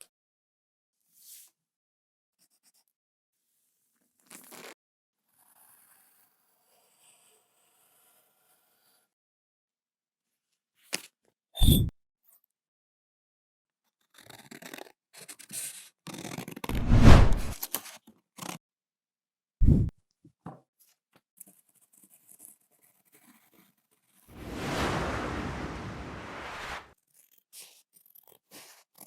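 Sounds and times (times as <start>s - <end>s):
short clicks and scrapes: 16.7s - 17.6s.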